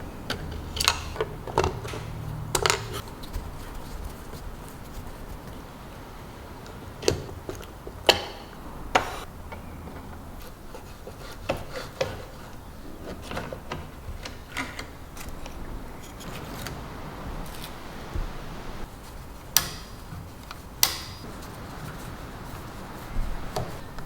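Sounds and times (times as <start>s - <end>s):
rubbing: 2.3s - 5.8s
clicks of small hard parts: 19.5s - 21.3s.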